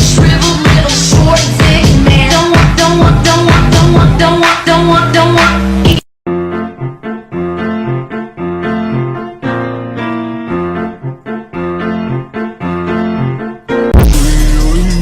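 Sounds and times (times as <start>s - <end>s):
piano chords repeating: 0.0s - 15.0s
louder piano music: 6.3s - 15.0s.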